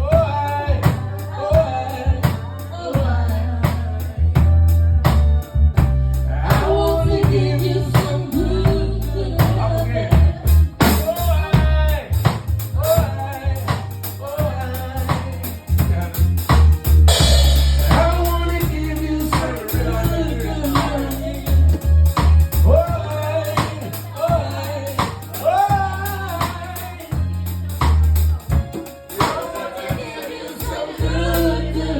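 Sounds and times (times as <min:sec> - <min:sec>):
band playing a song: 0:00.0 - 0:31.9.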